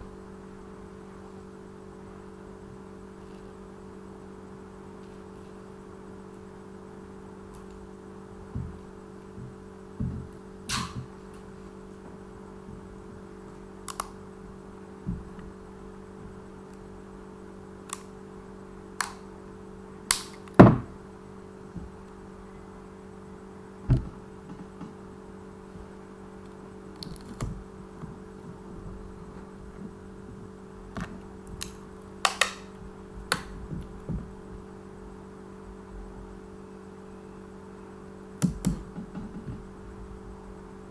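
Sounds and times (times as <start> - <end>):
steady low hum: 0.0 - 40.9
thump: 20.6 - 21.0, 23.9 - 24.6.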